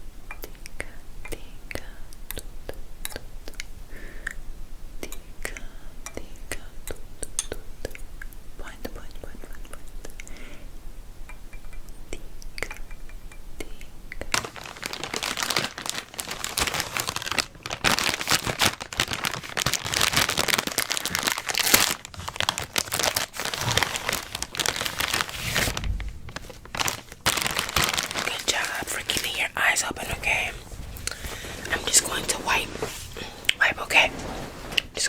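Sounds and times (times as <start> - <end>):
crinkling and crackling: 14.2 - 35.0.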